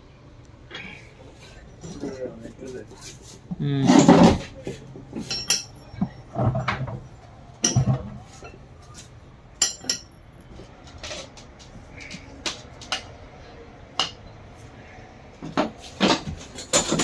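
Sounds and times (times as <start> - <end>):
metal tools clinking: 1.4 - 2.8, 5.1 - 6.9, 9.6 - 10.2, 16.0 - 17.0.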